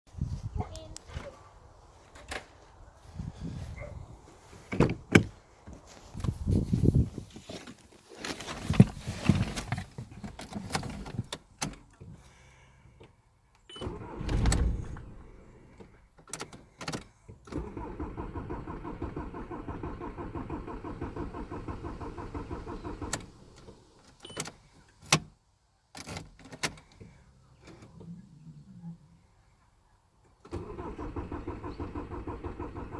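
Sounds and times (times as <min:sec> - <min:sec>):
starter motor cranking engine: 0:13.8 - 0:15.4, 0:17.5 - 0:23.9, 0:30.5 - 0:32.9
heavy thump: 0:14.2 - 0:15.4.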